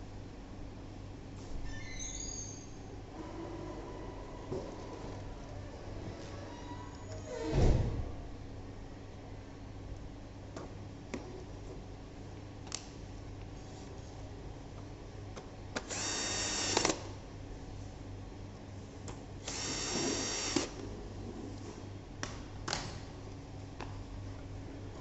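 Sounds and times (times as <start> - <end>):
electric screwdriver whirring: 15.8 - 17.0, 19.4 - 20.8.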